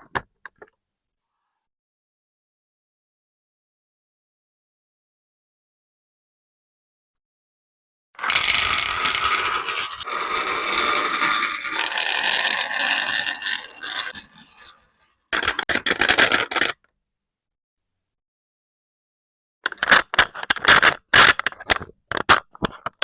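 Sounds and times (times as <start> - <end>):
marbles rolling down track: 8.2 - 16.8
rapid clicking clatter: 15.4 - 16.8.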